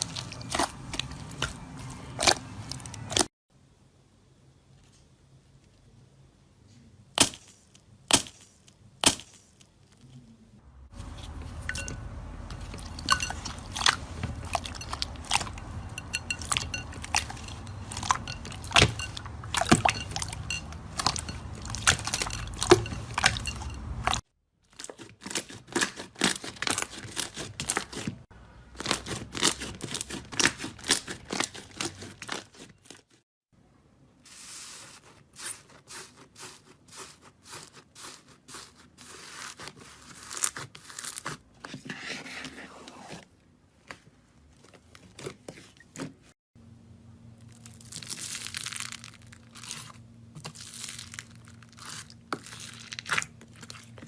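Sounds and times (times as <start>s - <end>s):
slime crackling and popping: 47.4s - 49.9s.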